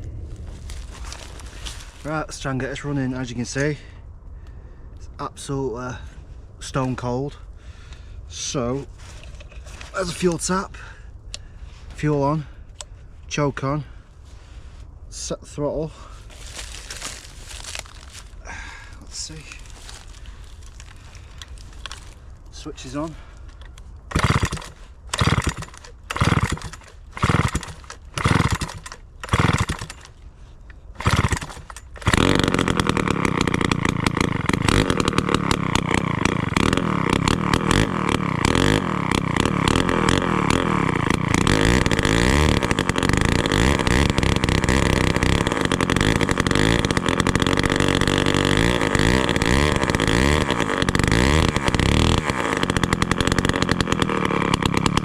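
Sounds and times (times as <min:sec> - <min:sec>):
chainsaw engine pull-starting: 0:08.4 - 0:11.5, 0:16.0 - 0:55.0
chainsaw engine revving: 0:24.1 - 0:30.2, 0:30.9 - 0:55.0.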